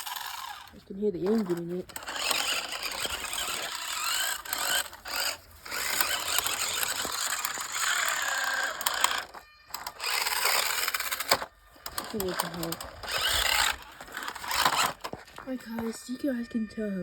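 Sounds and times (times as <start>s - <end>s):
toy car electric motor whirring: 0.0s - 16.8s.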